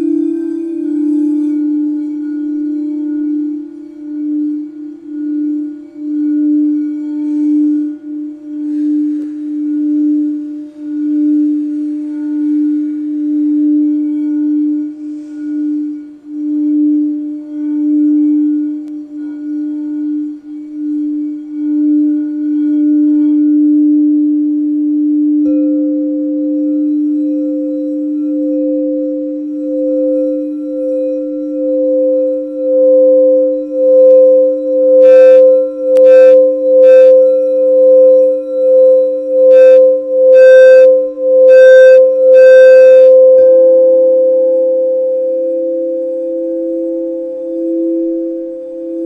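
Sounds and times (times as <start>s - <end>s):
singing bowl ringing: 0.0s - 49.0s
higher-pitched singing bowl struck: 21.2s - 49.0s.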